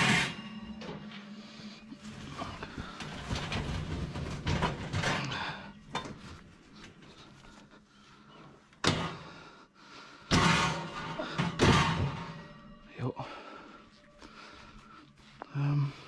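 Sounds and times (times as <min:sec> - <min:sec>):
clattering and handling noises: 0:00.0 - 0:09.4, 0:10.3 - 0:12.8.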